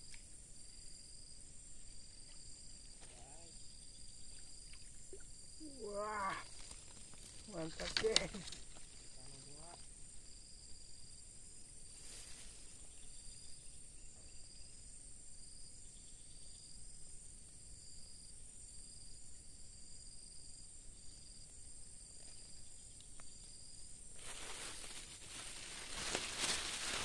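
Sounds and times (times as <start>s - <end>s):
crickets chirping: 0.0s - 27.0s
loud rustling rush: 24.2s - 27.0s.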